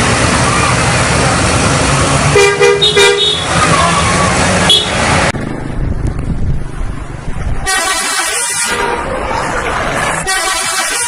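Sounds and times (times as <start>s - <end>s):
loud street noise: 0.0s - 11.0s
bus musical horn: 2.3s - 3.6s, 4.6s - 5.0s, 7.6s - 9.1s, 10.2s - 11.0s.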